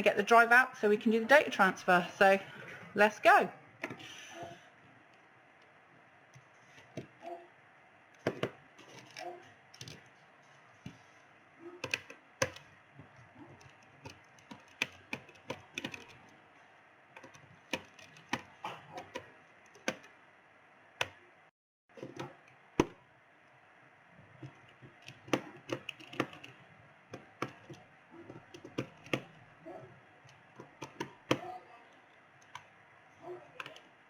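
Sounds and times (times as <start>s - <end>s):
laptop and tools clicking and knocking: 3.8s - 4.1s, 6.3s - 7.2s, 8.1s - 11.2s, 11.8s - 16.4s, 17.1s - 20.2s, 21.0s - 21.2s, 21.9s - 23.1s, 24.3s - 29.6s, 30.2s - 32.8s, 33.5s - 34.0s.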